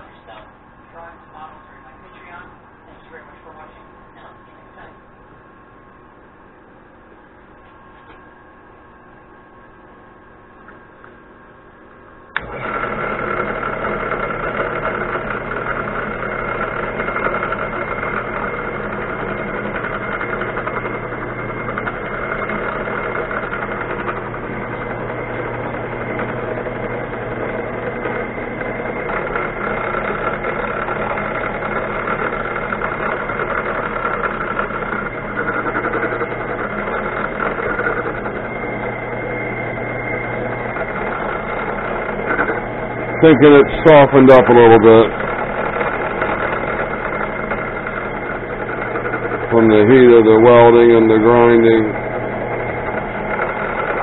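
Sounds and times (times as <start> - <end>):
power tool motor whining: 12.4 - 54.0.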